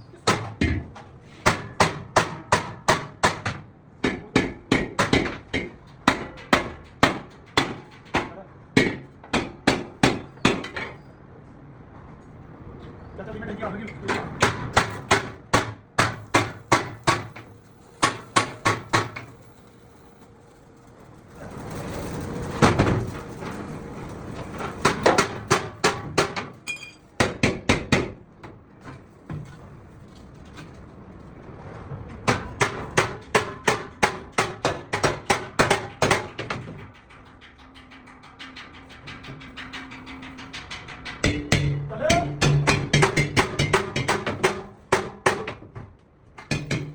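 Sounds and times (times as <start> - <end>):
hammer blows on sheet metal: 32.2 - 45.6.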